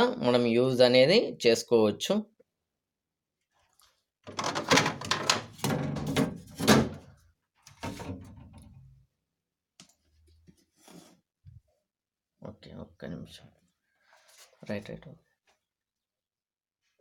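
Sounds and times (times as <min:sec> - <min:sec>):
plastic refrigerator fittings rattling: 0:04.3 - 0:08.9.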